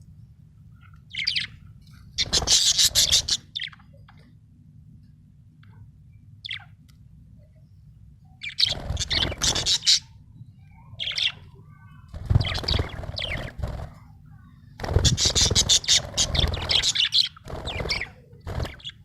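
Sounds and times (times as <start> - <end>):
steady low hum: 0.0 - 19.0
budgerigar chirping: 15.0 - 19.0.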